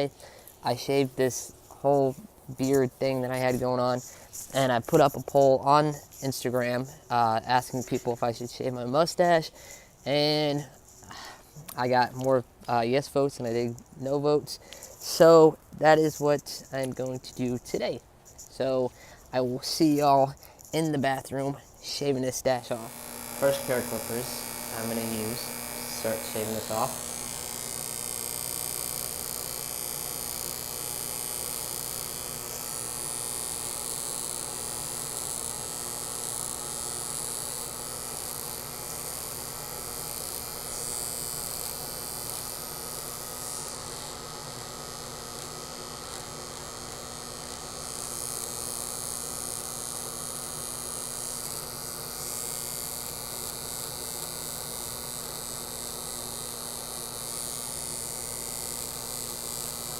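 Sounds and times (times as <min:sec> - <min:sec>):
electric hair clippers buzzing: 0:00.0 - 0:08.4, 0:21.4 - 0:59.9.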